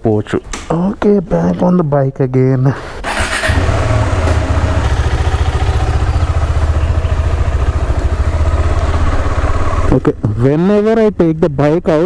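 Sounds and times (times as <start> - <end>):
motorcycle engine running: 3.2 - 11.0.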